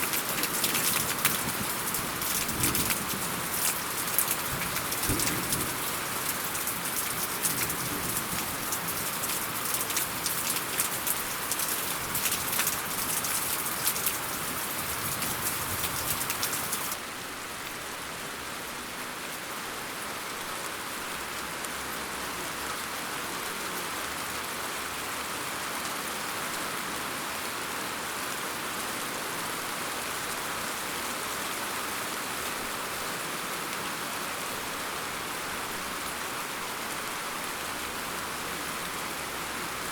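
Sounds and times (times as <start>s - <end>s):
close raindrop impacts: 0.0s - 17.0s
rain hiss: 0.0s - 18.6s, 27.5s - 39.9s.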